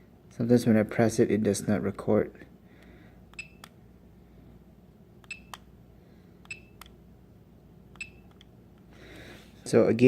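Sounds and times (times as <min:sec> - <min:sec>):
small button clicks: 0:05.2 - 0:05.7, 0:07.9 - 0:08.5.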